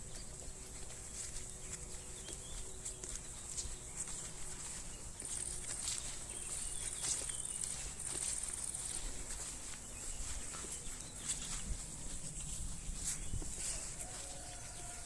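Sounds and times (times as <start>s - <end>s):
insects trilling: 0.0s - 15.0s
steps and rustles on forest floor: 0.0s - 15.0s.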